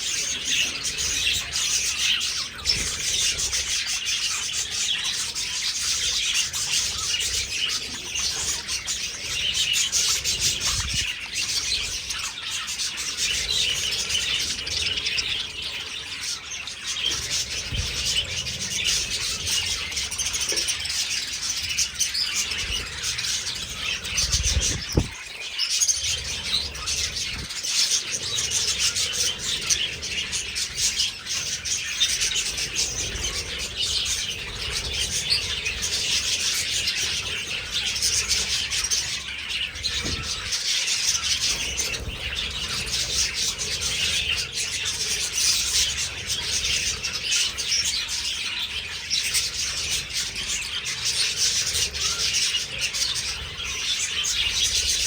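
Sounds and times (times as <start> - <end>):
budgerigars chattering and chirping: 0.0 - 55.0.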